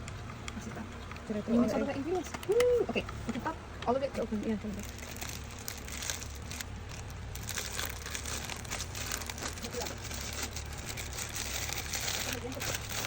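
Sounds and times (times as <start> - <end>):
packet crinkling and rustling: 4.3 - 13.0.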